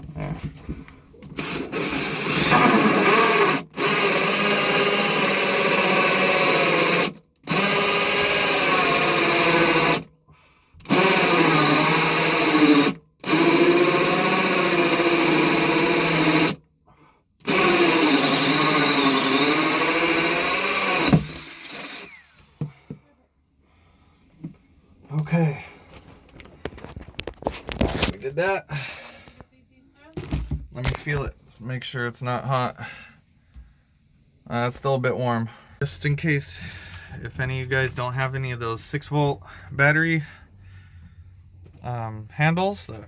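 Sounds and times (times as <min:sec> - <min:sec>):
power drill cutting with hole saw: 0:01.3 - 0:10.1, 0:10.8 - 0:16.6, 0:17.4 - 0:22.7.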